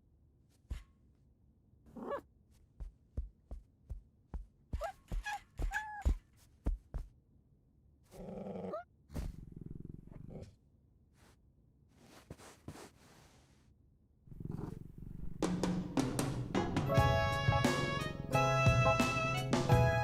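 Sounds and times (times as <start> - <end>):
cat purring: 8.1 - 10.6, 14.3 - 17.0.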